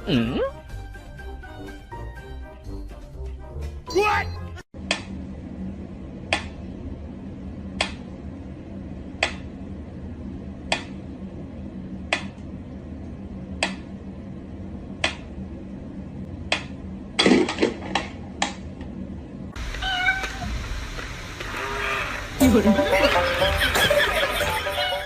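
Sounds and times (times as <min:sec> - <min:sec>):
low hum: 0:04.8 - 0:19.7.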